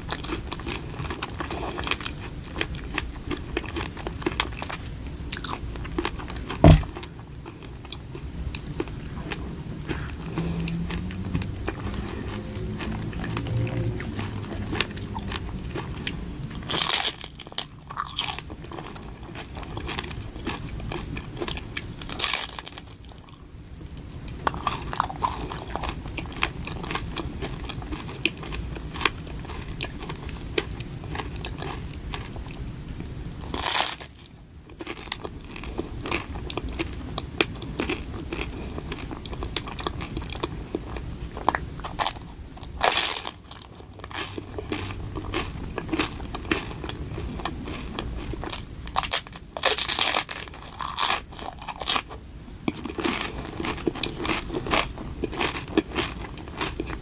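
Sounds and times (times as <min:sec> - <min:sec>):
chewing with crackling clicks: 0:00.0 - 0:57.0
loud crunching bites: 0:10.9 - 0:18.4, 0:48.5 - 0:52.0.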